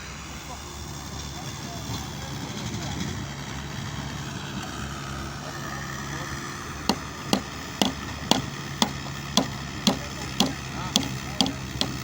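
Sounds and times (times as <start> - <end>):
low engine hum: 0.0 - 12.0
hand tool striking hard surface: 6.9 - 12.0.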